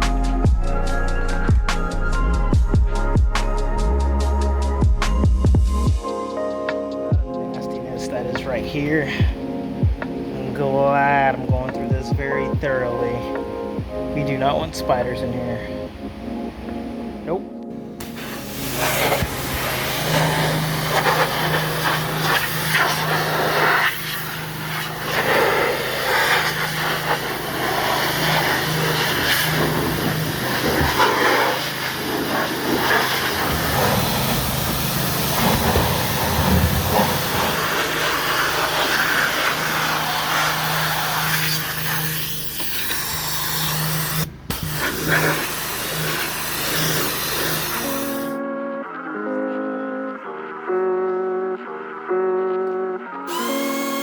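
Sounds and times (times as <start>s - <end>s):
air rushing hiss: 18.0s - 48.4s
low motor hum: 18.4s - 48.3s.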